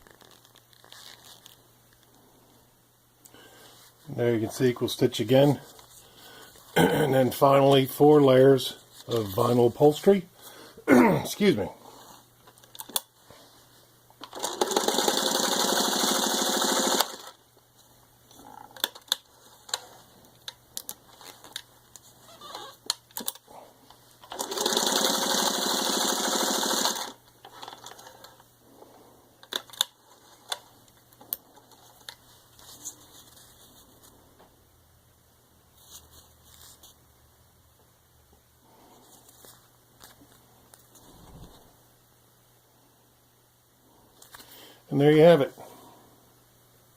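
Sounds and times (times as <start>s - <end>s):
clicks and handling noises: 12.4s - 13.2s, 17.6s - 24.4s, 27.3s - 28.5s, 29.4s - 34.5s
sewing machine running: 14.3s - 17.4s, 24.2s - 27.2s.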